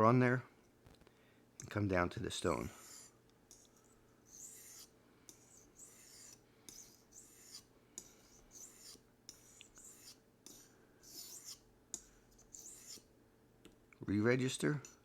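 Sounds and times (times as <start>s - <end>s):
knife scraping on sharpening stone: 2.8s - 13.1s.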